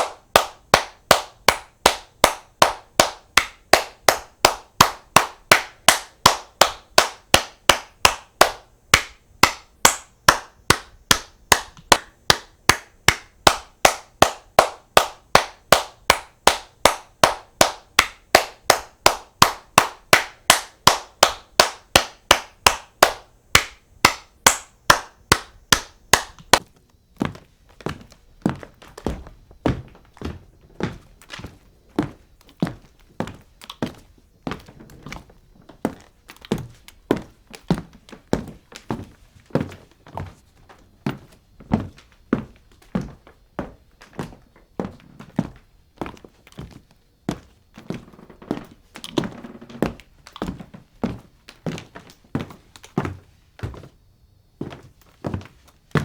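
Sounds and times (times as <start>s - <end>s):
sharp claps: 0.0s - 26.7s.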